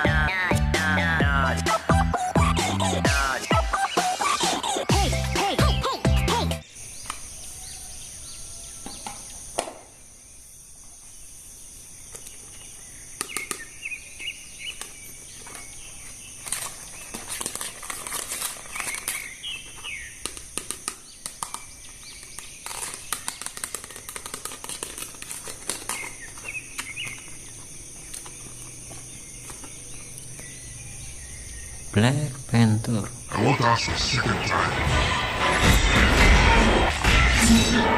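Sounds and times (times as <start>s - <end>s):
plastic packaging rustling: 14.2s - 30.6s
steady high-pitched drone: 33.3s - 37.9s.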